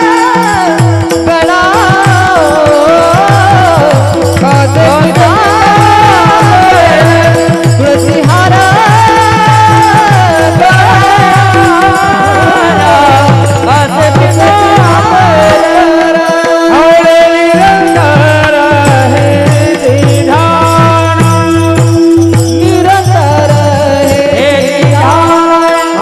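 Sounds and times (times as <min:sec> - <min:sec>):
devotional song with ornamented melody: 0:00.0 - 0:26.0
regular drum beat: 0:00.0 - 0:26.0.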